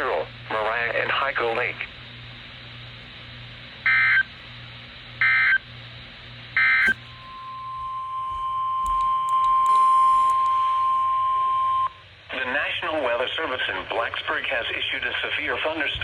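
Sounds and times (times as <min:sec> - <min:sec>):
steady warning alarm tone: 0:03.8 - 0:04.3, 0:05.2 - 0:05.6, 0:06.6 - 0:12.0.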